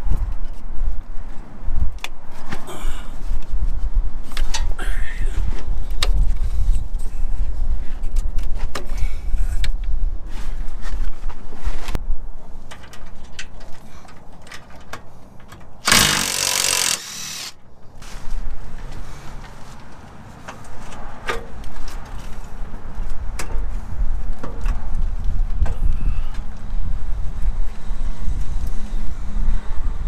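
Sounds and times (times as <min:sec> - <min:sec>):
power tool whirring: 0:15.8 - 0:17.6.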